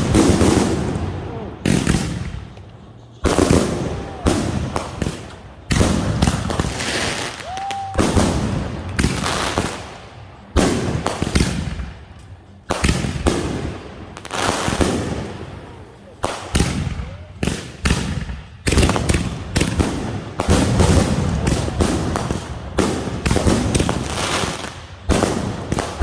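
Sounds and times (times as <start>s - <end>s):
fireworks bangs with rumble: 0.0s - 12.0s, 12.6s - 26.0s
fireworks crackling: 0.0s - 26.0s.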